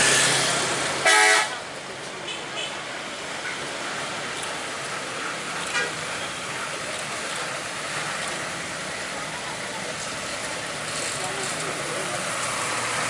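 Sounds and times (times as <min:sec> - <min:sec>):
roadside traffic noise: 0:00.0 - 0:13.0
vehicle horn toot: 0:01.0 - 0:01.6.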